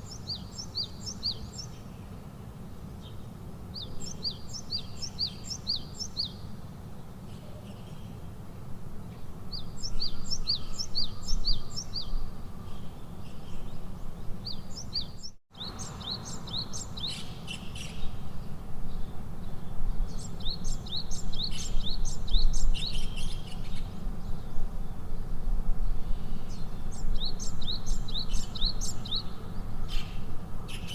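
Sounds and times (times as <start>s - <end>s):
songbird chirping: 0.0s - 8.4s, 9.1s - 25.1s, 26.0s - 30.9s.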